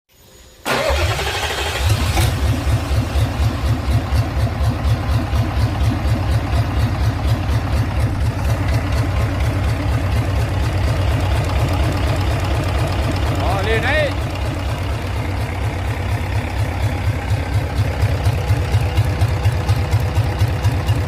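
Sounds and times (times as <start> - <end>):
engine running: 0.2 - 21.0.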